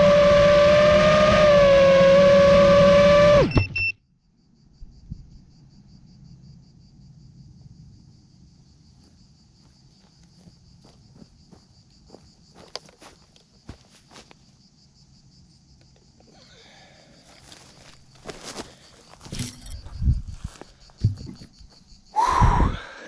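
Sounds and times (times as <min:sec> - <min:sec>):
drone motors whining: 0:00.0 - 0:03.9
crickets chirping: 0:00.0 - 0:23.0
short electronic beeps: 0:03.4 - 0:04.0.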